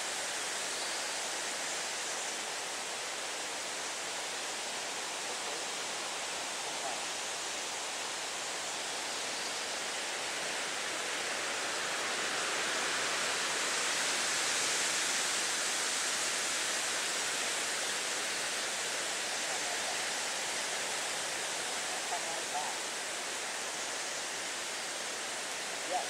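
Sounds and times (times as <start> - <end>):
wind rustling leaves: 0.0 - 26.0.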